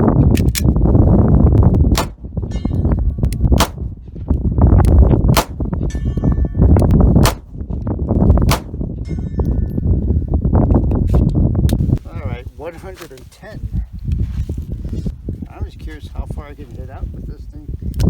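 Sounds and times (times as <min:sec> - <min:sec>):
low rumble: 0:00.0 - 0:12.2
revolver gunshots: 0:01.9 - 0:02.3, 0:03.6 - 0:03.8, 0:05.3 - 0:05.7, 0:07.2 - 0:07.5, 0:08.5 - 0:08.8.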